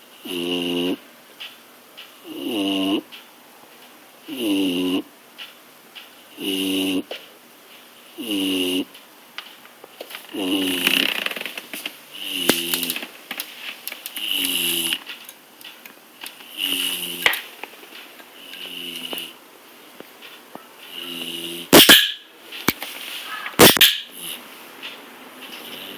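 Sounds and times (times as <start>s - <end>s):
dog snoring: 0.1s - 1.0s, 2.2s - 3.1s, 4.2s - 5.1s, 6.2s - 7.2s, 8.0s - 9.0s, 10.2s - 13.1s, 14.1s - 15.2s, 16.4s - 17.6s, 18.3s - 19.4s, 20.8s - 21.8s, 25.6s - 25.9s.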